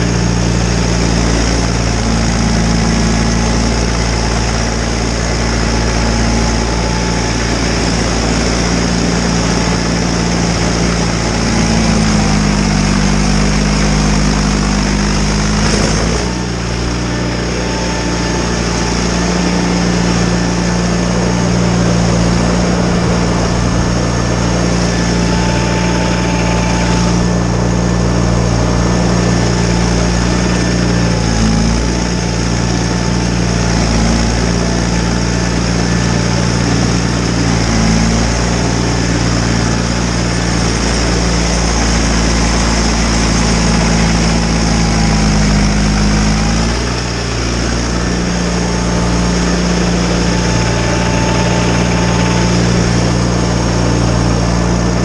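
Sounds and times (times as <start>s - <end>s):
garden tractor engine running: 0.0s - 55.0s
steady high whine: 0.0s - 55.0s.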